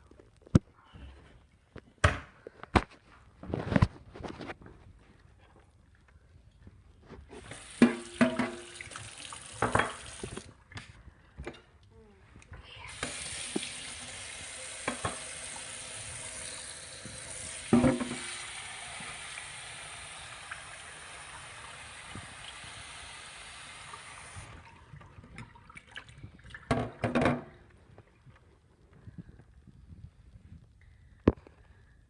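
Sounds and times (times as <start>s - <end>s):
tap water running into sink: 7.4s - 10.5s, 12.9s - 27.5s.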